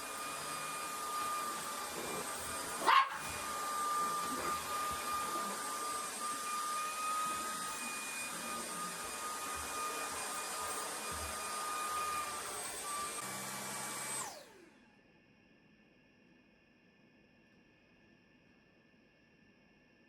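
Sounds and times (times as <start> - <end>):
vacuum cleaner running: 0.0 - 14.9.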